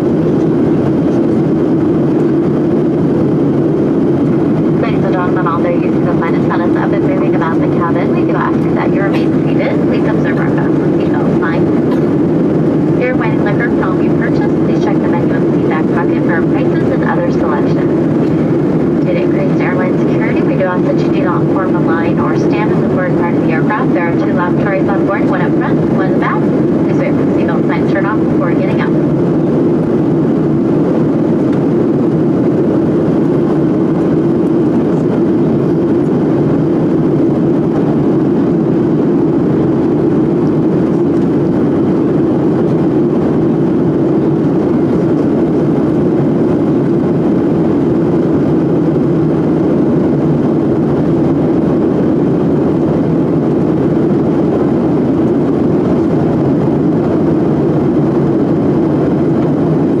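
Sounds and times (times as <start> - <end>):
airliner cabin drone: 0.0 - 60.0.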